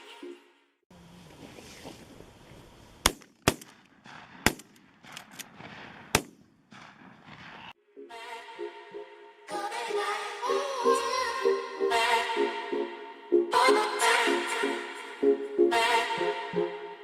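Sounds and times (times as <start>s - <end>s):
shotgun shots: 3.0s - 7.8s.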